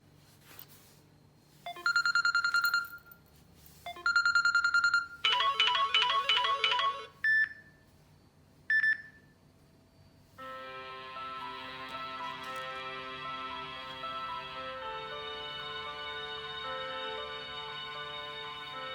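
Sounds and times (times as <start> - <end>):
trilling electronic ringtone: 1.7 - 3.1, 3.9 - 7.5
melodic ringtone notes: 3.9 - 7.1
sustained electronic chord: 10.4 - 18.9.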